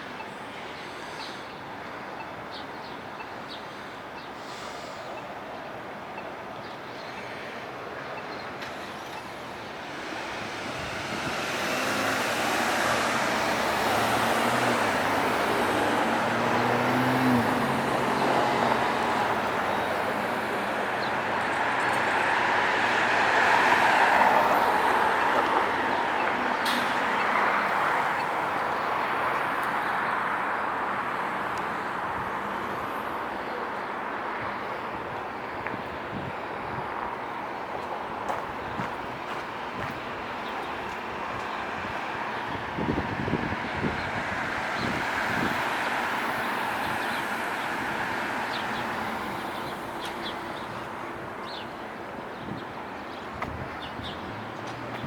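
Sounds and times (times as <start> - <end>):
traffic passing: 0.0 - 55.0
vehicle engine hum: 9.0 - 22.0.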